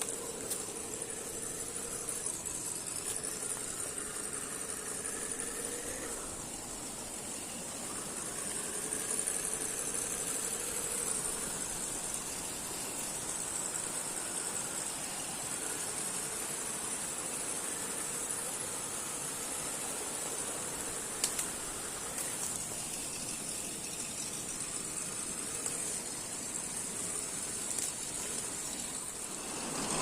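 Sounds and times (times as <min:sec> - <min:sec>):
electric motor whining: 0:00.0 - 0:13.8, 0:19.9 - 0:30.0.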